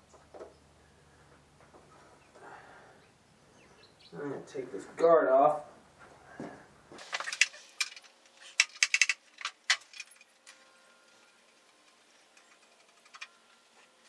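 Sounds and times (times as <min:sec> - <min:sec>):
metal tools clicking: 0:07.1 - 0:10.6, 0:11.2 - 0:14.0.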